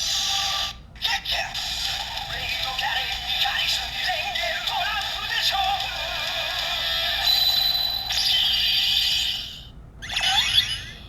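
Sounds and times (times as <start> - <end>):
toy electronic sound effects: 7.2 - 11.0.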